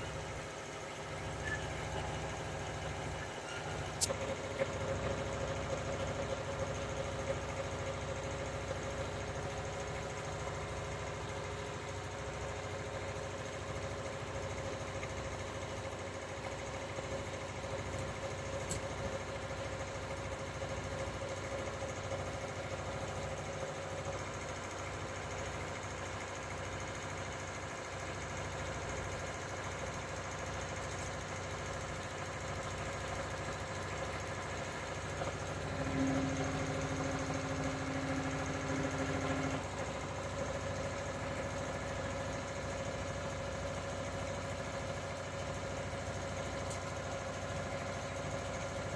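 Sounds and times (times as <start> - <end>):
engine idling: 0.0 - 48.9
steady hum: 34.2 - 40.2.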